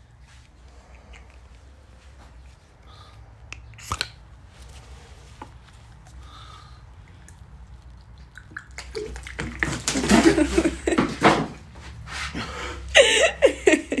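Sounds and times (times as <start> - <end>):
water splashing and pouring: 8.2 - 10.7.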